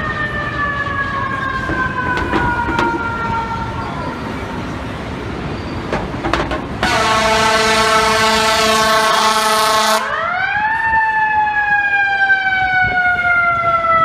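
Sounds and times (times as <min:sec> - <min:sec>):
fire truck siren falling in pitch: 0:00.0 - 0:04.4, 0:06.8 - 0:14.0
city traffic noise: 0:00.0 - 0:14.0.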